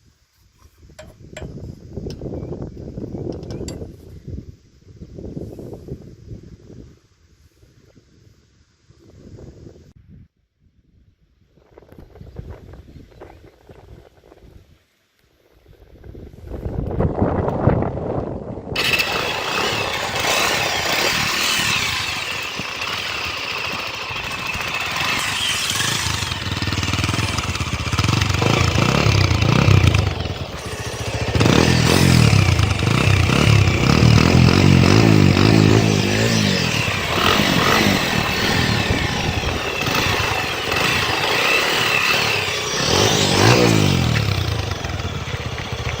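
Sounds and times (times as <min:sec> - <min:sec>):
motorcycle engine revving: 0:18.8 - 0:46.0.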